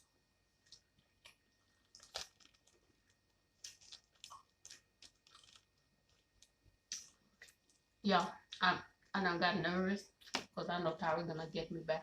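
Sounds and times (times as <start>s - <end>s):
chewing crunches: 0.6s - 7.9s.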